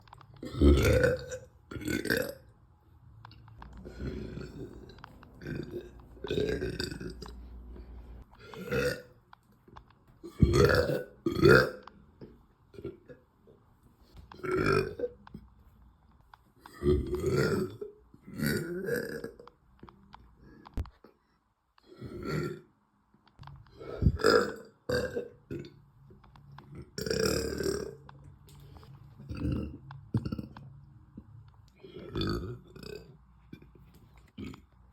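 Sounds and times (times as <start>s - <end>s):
woman burping: 0.4s - 2.5s, 3.8s - 7.3s, 10.2s - 11.8s, 24.0s - 25.7s.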